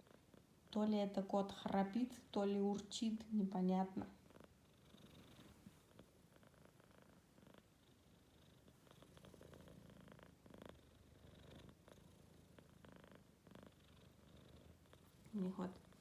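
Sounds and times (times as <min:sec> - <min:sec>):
kitten purring: 0:00.0 - 0:16.0.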